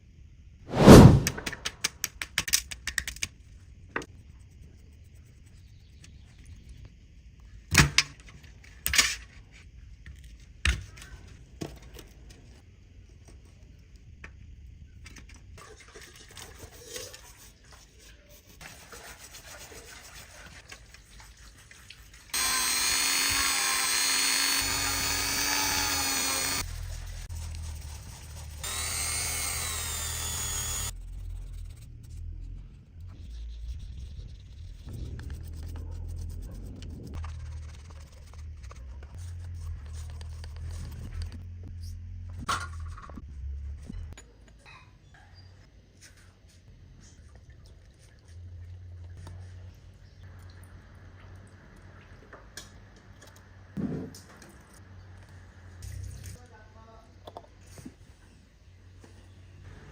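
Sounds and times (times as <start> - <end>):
small power tool running: 22.4 - 26.7, 28.6 - 30.9.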